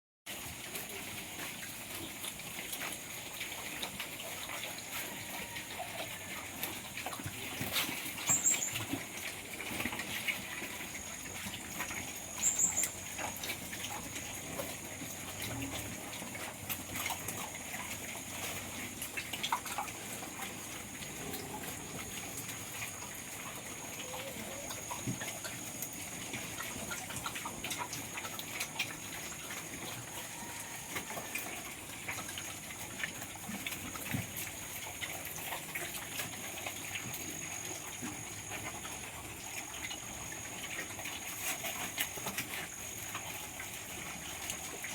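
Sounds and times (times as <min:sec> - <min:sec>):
piglets eating with small clicks: 0:00.3 - 0:44.9
high chirps: 0:12.4 - 0:13.0.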